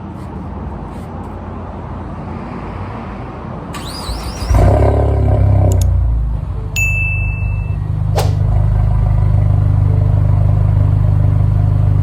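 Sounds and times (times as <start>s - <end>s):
car engine rumbling and accelerating: 3.7s - 6.8s, 7.5s - 12.0s.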